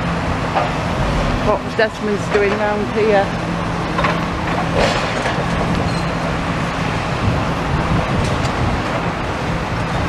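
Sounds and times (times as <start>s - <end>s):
excavator diesel engine running: 0.0s - 10.0s.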